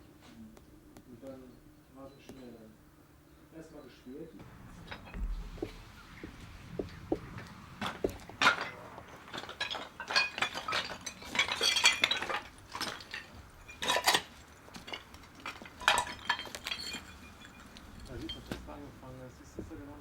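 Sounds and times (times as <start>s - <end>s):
broken glass clinking and crunching: 7.8s - 18.8s.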